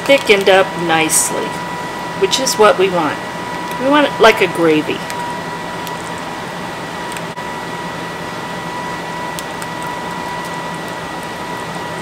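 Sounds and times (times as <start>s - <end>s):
mechanical hum with high whine: 0.0s - 12.0s.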